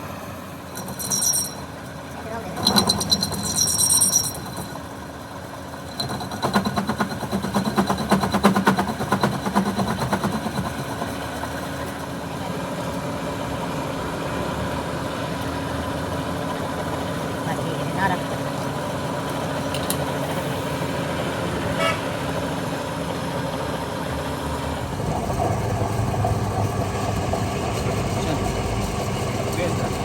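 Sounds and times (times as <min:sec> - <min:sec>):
machine humming: 0:24.0 - 0:30.0.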